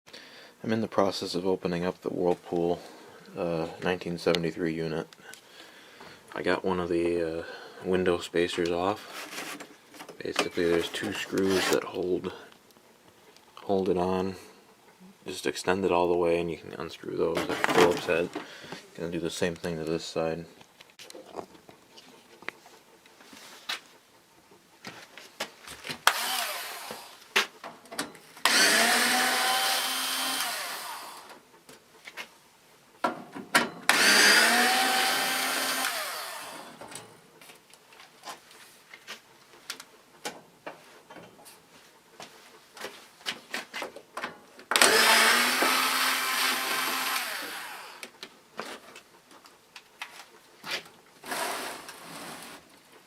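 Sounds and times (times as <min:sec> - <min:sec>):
electric drill backing out screws: 0:26.0 - 0:27.4, 0:28.0 - 0:31.4, 0:33.6 - 0:37.0, 0:44.7 - 0:48.2, 0:51.2 - 0:52.6.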